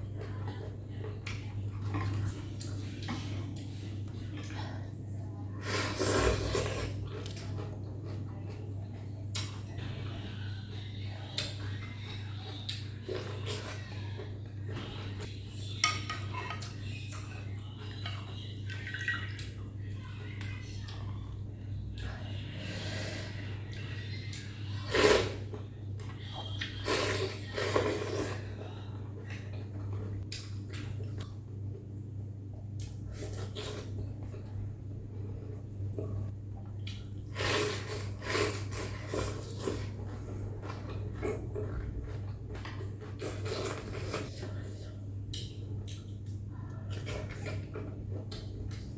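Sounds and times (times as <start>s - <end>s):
steady low hum: 0.0s - 48.9s
person slurping noodles: 5.6s - 7.0s, 24.8s - 25.4s, 37.3s - 39.9s
chewing: 36.0s - 48.9s.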